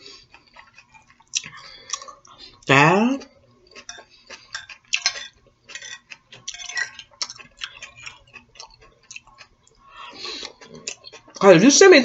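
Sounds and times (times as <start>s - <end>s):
wet chewing mouth clicks: 0.2s - 2.4s, 6.1s - 11.4s.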